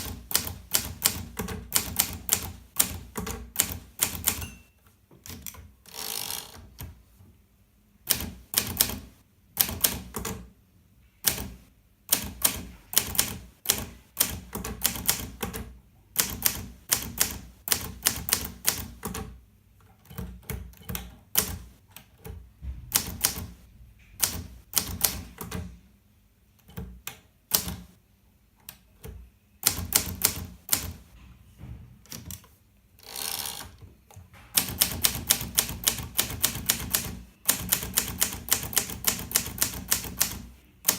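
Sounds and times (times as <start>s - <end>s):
typewriter keys clacking: 0.0s - 5.6s, 34.5s - 40.9s.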